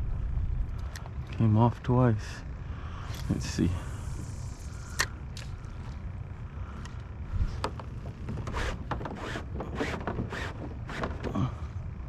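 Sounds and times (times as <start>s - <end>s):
wind rumbling on microphone: 3.2s - 11.3s
short scrapes and clicks: 8.3s - 11.4s.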